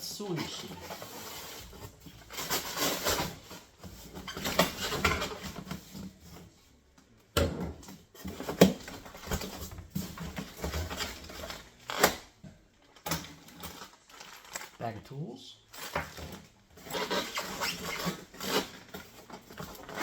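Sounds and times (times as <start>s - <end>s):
packaging rustling: 12.8s - 14.8s.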